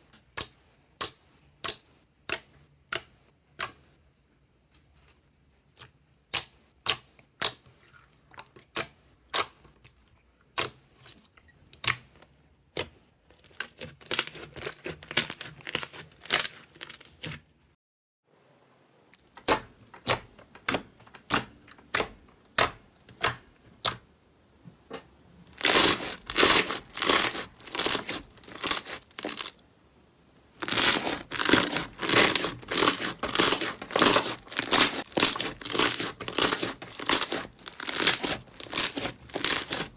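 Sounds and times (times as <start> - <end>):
slime crackling when squeezed: 25.6 - 29.6, 30.6 - 39.9
slime popping: 25.6 - 29.6, 30.6 - 39.9.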